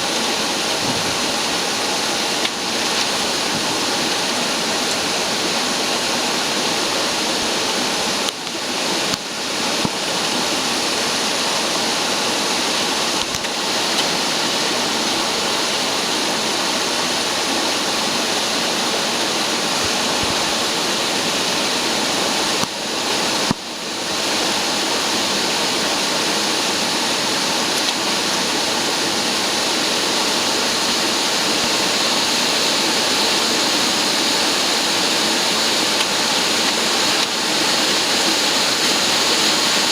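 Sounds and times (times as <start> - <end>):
vacuum cleaner running: 11.5 - 39.9.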